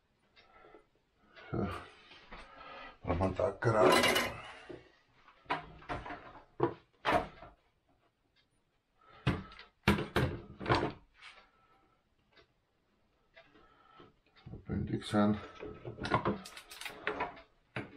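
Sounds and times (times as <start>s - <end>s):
sharp wooden knocks and clacks: 9.2s - 11.0s.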